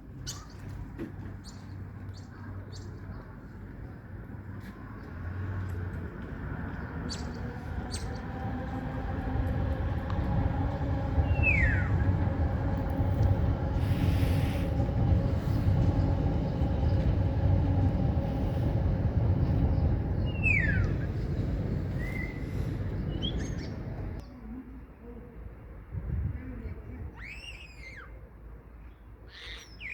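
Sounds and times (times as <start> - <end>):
passing vehicle rumble: 3.8 - 24.2
starling whistling: 11.2 - 12.2, 19.7 - 21.3, 21.9 - 23.8, 27.2 - 28.1.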